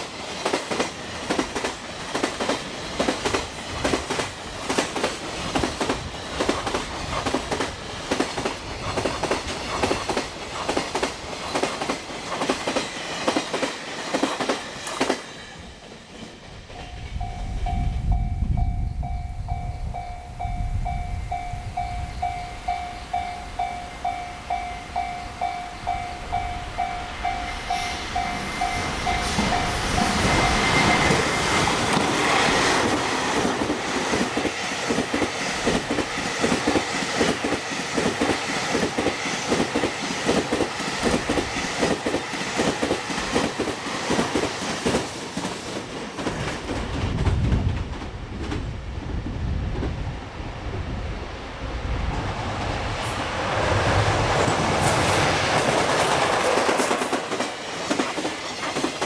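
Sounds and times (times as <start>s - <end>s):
train wheels clattering over rail joints: 0.0s - 17.3s, 52.7s - 59.0s
level crossing warning bell: 16.7s - 31.9s.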